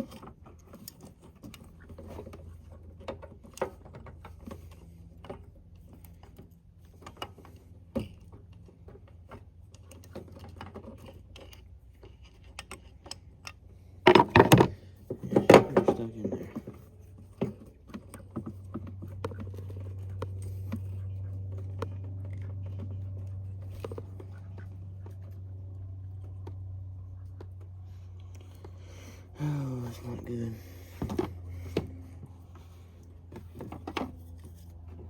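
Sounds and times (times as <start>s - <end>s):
faint low hum: 0.0s - 35.0s
tools clicking and tapping metal: 9.7s - 14.6s.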